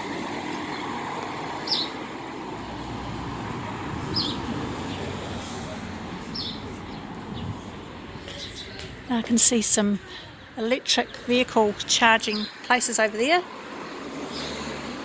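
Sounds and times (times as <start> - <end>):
road traffic rumble: 0.0 - 15.0
bird chirping: 1.6 - 2.0, 4.1 - 5.0, 6.3 - 7.6.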